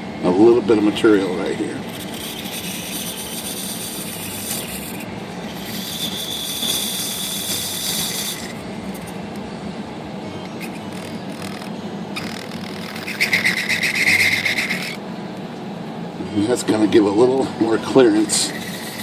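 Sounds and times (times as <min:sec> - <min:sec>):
knife scraping pulley: 0:01.0 - 0:09.4, 0:10.4 - 0:15.0, 0:18.1 - 0:19.0
typewriter motor humming: 0:01.1 - 0:09.4, 0:10.4 - 0:15.0, 0:18.4 - 0:19.0.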